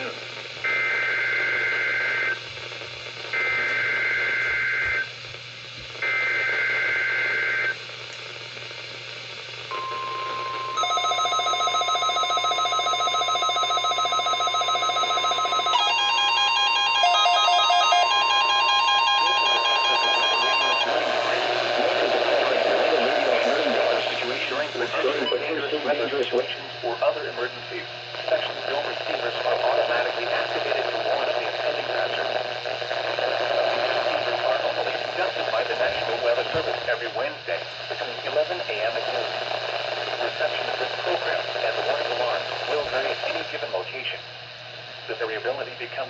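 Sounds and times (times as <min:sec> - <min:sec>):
steady warning alarm tone: 0:09.7 - 0:25.7
rapid pulsing electronic beep: 0:12.0 - 0:21.1.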